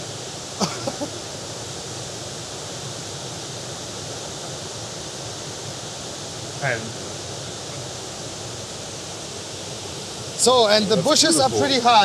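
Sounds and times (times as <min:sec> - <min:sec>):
waterfall rushing: 0:00.1 - 0:12.0.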